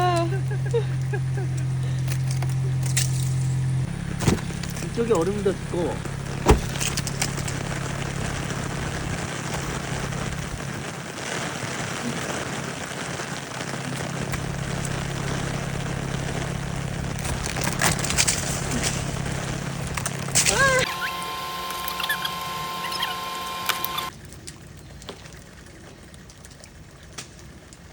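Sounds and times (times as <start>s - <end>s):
car engine idling: 0.0s - 10.8s, 14.2s - 24.1s
ice crunching: 1.4s - 24.1s.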